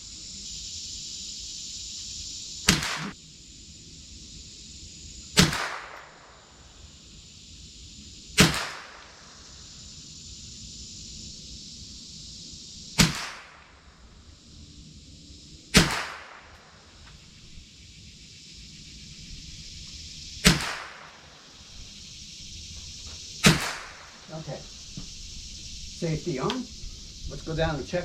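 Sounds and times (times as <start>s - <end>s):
rifle shots: 2.7s - 3.2s, 5.4s - 6.2s, 8.4s - 9.2s, 13.0s - 13.7s, 15.7s - 16.6s, 20.4s - 21.3s, 23.4s - 24.3s.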